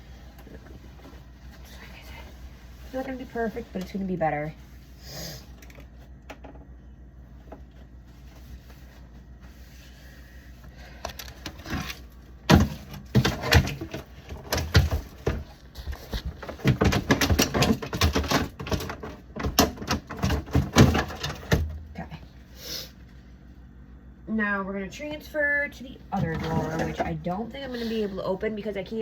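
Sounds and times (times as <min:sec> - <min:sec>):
plastic drawer knocks and clatters: 0:16.1 - 0:21.8.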